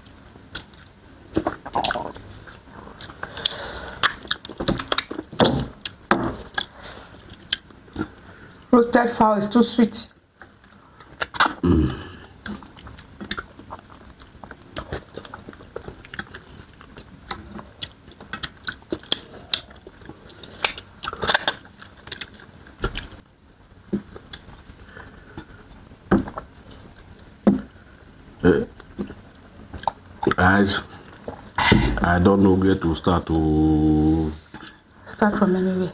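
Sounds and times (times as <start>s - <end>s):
mouths chewing food: 0.5s - 8.4s, 12.2s - 23.2s, 28.6s - 32.4s.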